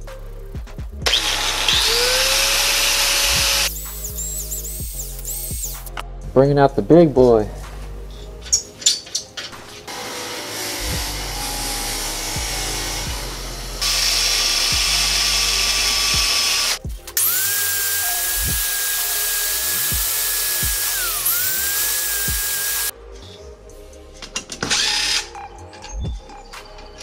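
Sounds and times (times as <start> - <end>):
background music with a beat: 0.0 - 6.4, 7.2 - 9.9, 10.8 - 27.0
abrasive wheel hissing on metal: 1.0 - 5.9, 9.9 - 22.9
power tool motor whine: 1.0 - 5.9, 9.9 - 22.9.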